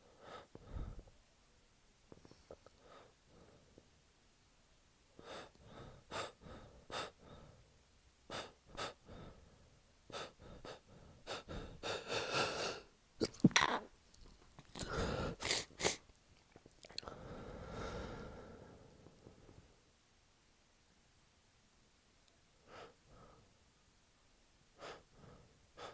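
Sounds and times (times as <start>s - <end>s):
man breathing quickly: 0.0s - 1.1s, 5.2s - 7.7s, 8.3s - 12.9s, 14.8s - 16.0s, 17.2s - 18.9s, 24.8s - 25.9s
long breath out: 17.1s - 18.9s.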